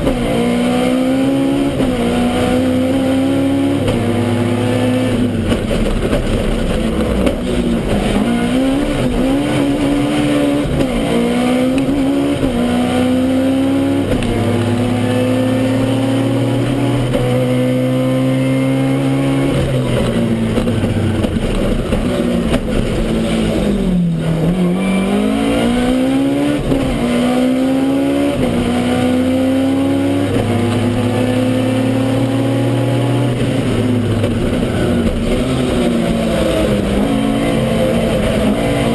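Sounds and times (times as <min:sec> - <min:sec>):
car engine accelerating hard: 0:00.0 - 0:38.9.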